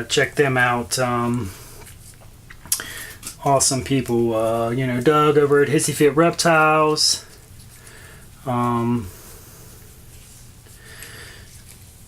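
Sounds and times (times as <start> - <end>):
steady low hum: 0.0 - 12.0
faint breath: 2.7 - 3.2, 7.7 - 8.4, 9.0 - 11.6.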